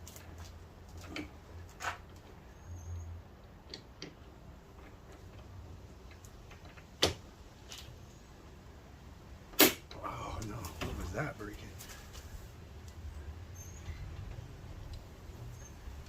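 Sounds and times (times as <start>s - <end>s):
loud sharp click: 9.6s - 9.9s.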